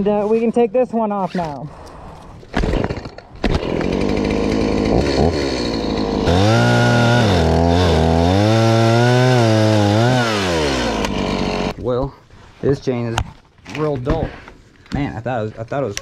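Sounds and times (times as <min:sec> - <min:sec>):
chainsaw revving: 0:02.6 - 0:11.7.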